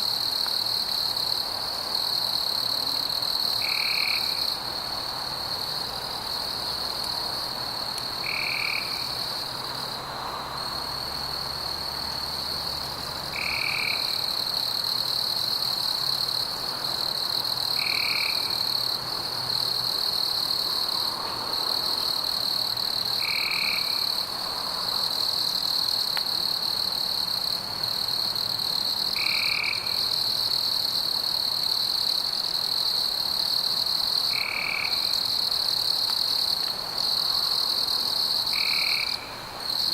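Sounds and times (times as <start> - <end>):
high-pitched frog and insect trilling: 2.4 - 4.6, 8.2 - 9.4, 13.4 - 15.6, 17.4 - 19.0, 19.6 - 24.2, 28.8 - 30.7, 32.8 - 39.9.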